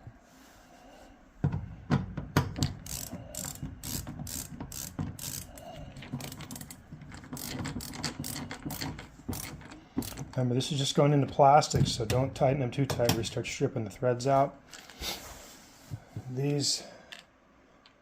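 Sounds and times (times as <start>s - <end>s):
ratcheting screwdriver clicking: 2.5s - 10.4s.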